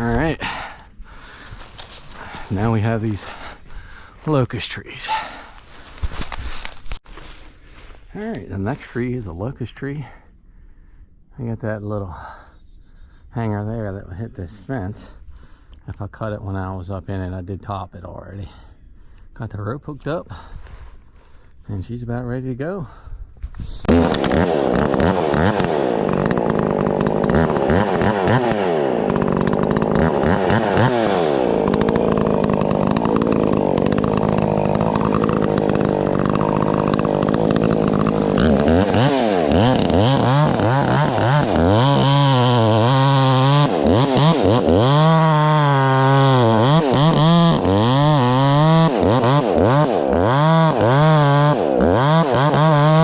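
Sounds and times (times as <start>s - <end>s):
chainsaw cutting wood: 0.0s - 3.5s, 23.6s - 53.0s.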